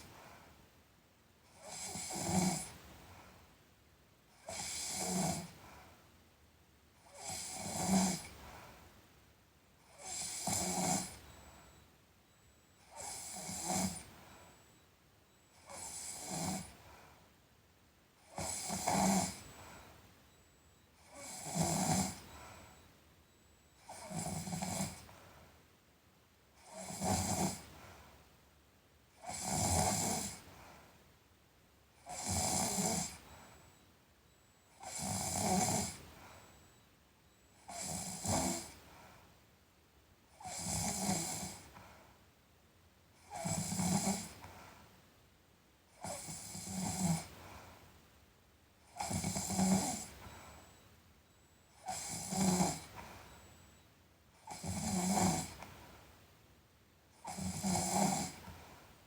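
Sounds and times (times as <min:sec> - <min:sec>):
person snoring: 0:32.1 - 0:33.2, 0:49.0 - 0:50.1, 0:51.8 - 0:52.9, 0:57.3 - 0:58.4.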